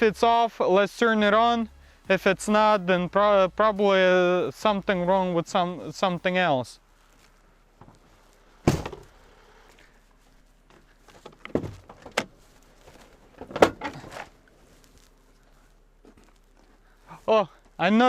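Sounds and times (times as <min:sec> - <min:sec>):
faint rustling: 0:04.5 - 0:18.0
truck door knocks and thumps: 0:08.7 - 0:09.1, 0:11.2 - 0:12.3.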